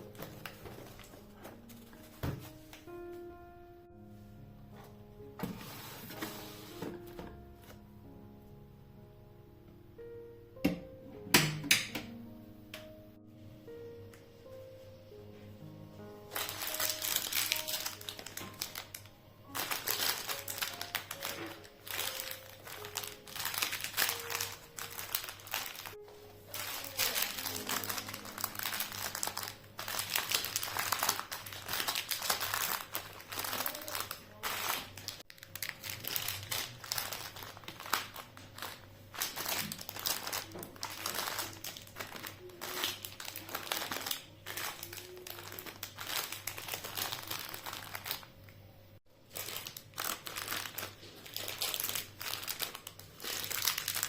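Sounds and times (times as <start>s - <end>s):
thin material crinkling: 0.0s - 3.2s, 16.1s - 48.4s, 49.2s - 54.0s
soft background music: 0.0s - 54.0s.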